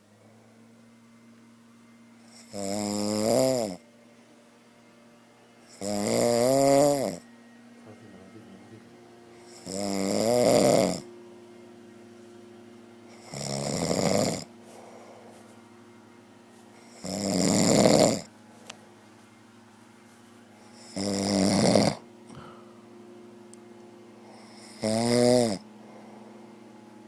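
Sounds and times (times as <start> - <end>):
man snoring loudly: 2.2 - 3.8, 5.7 - 7.2, 9.4 - 11.1, 13.1 - 15.2, 16.8 - 18.3, 20.7 - 22.5, 24.2 - 26.3.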